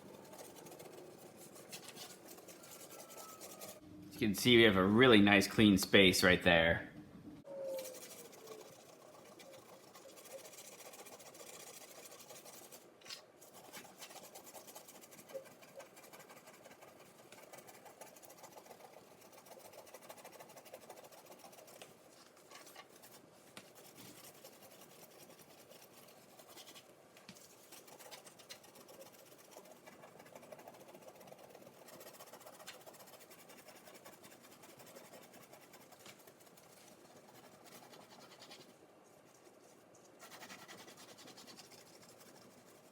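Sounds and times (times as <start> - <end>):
tablet scrubbing against glass: 0.0 - 3.8.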